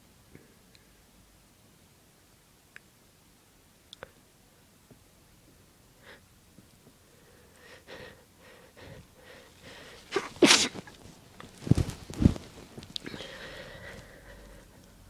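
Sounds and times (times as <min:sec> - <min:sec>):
faint breaths: 0:07.0 - 0:15.0
person sneezing loudly: 0:10.1 - 0:11.0.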